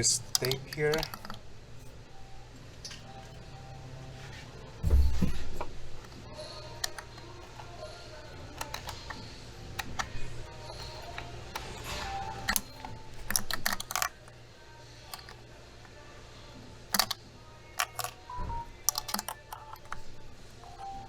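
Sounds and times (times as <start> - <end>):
plastic connectors clicking: 0.0 - 1.4, 5.5 - 14.4, 15.0 - 15.4, 16.9 - 21.0
background music: 0.0 - 21.0.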